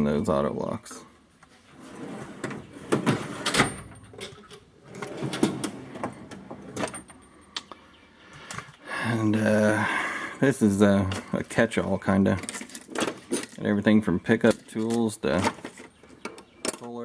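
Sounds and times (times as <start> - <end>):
steel drawers sliding: 1.7 - 7.1
tools clattering inside drawer: 2.2 - 7.2, 12.3 - 13.6.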